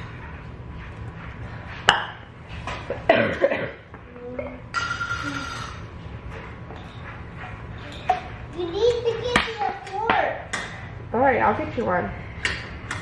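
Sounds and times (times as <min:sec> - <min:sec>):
person coughing: 0:03.1 - 0:03.9.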